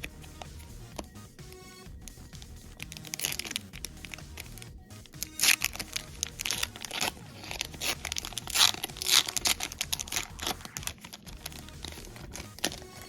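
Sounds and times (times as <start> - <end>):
wrapper tearing and crinkling: 2.8 - 4.4, 5.1 - 13.0.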